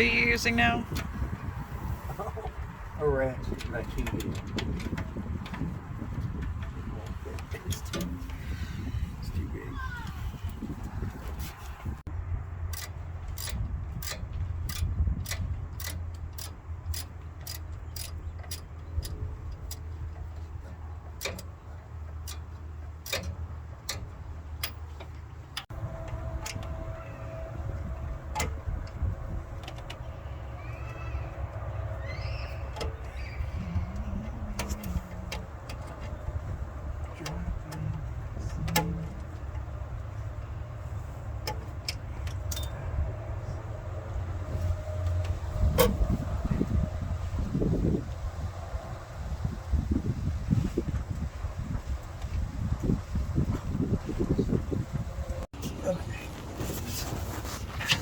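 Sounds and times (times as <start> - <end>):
ratchet wrench clicking: 12.7 - 19.9
low rumble: 33.2 - 41.3.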